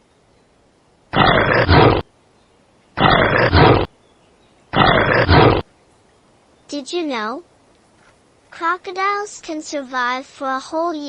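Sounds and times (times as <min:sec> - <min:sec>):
bear growling: 0:01.1 - 0:02.1, 0:03.0 - 0:03.9, 0:04.8 - 0:05.7.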